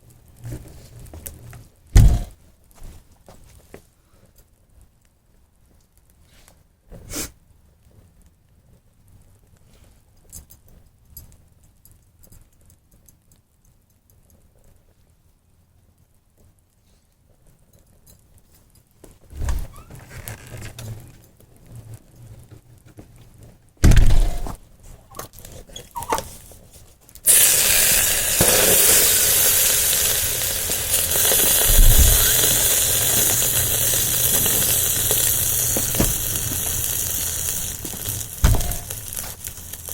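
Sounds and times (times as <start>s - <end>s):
electrical arc sizzling and crackling: 1.2s - 2.4s, 27.2s - 39.9s
thumps: 2.0s - 2.4s, 23.8s - 24.6s, 37.8s - 39.4s.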